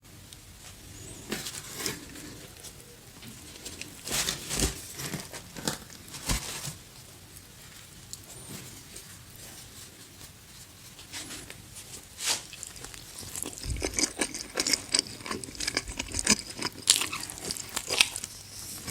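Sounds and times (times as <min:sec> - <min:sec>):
pizza being bitten and chewed: 0:06.8 - 0:18.9.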